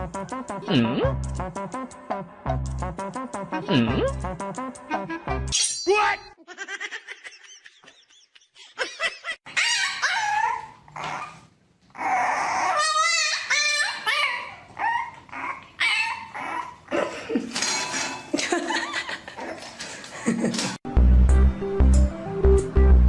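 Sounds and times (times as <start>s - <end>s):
dog whining and yipping: 9.5s - 16.9s.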